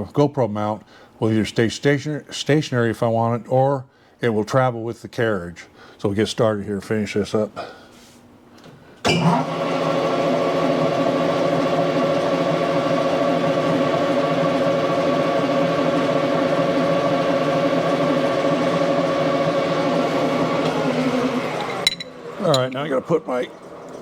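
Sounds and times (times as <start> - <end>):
metal lathe running: 9.1 - 24.0.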